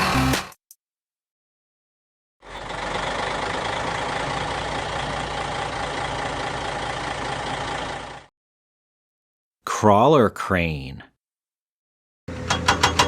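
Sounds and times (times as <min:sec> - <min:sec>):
heavy vehicle engine idling: 0:02.4 - 0:08.3.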